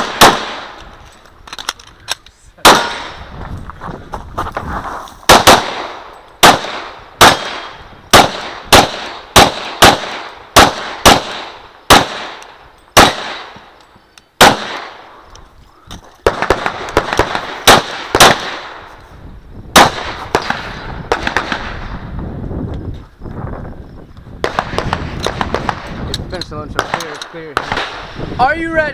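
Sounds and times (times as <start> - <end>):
pistol shots echoing: 0.0 - 0.8, 2.6 - 3.2, 5.3 - 13.7, 14.4 - 15.1, 16.2 - 18.8, 19.8 - 21.8, 26.8 - 28.1.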